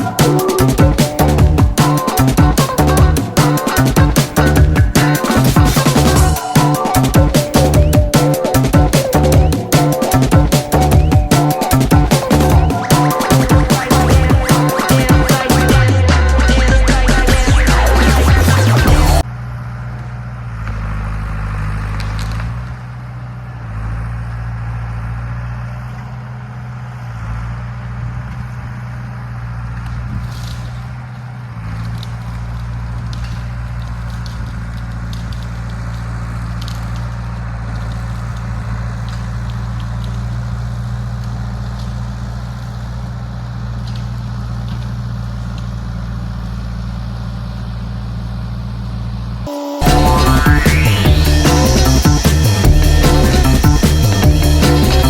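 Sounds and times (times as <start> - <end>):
dozer engine under load: 0.0 - 55.0
sharp cracks and snaps: 19.9 - 23.0, 29.7 - 43.0, 43.6 - 45.8.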